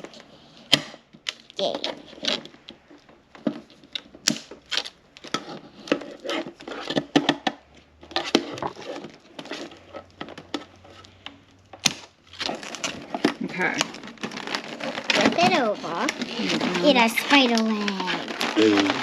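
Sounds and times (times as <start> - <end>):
packaging crinkling and rustling: 0.0 - 19.0
packing tape cut and peeled: 11.8 - 19.0.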